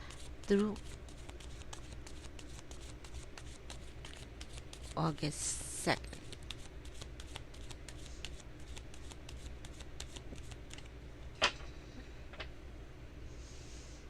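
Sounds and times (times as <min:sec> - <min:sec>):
cards being shuffled: 0:00.1 - 0:11.0.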